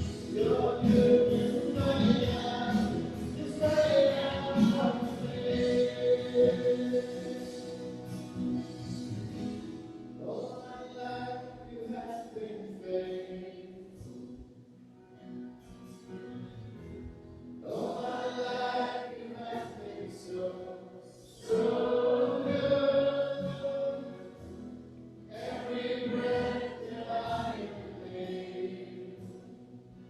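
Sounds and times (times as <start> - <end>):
group singing a worship song: 0.0 - 9.2, 10.2 - 14.0, 17.6 - 24.4, 25.3 - 29.5.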